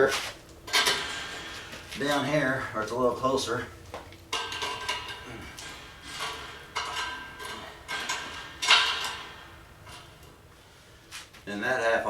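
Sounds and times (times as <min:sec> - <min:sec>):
steel clanking and ringing: 0:00.7 - 0:02.6, 0:04.3 - 0:10.5.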